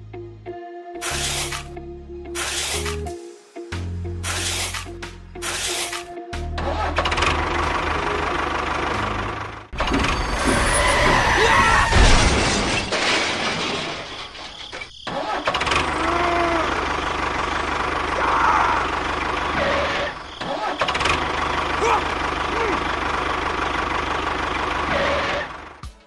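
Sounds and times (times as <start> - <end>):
engine running: 3.8 - 11.4, 15.2 - 25.9.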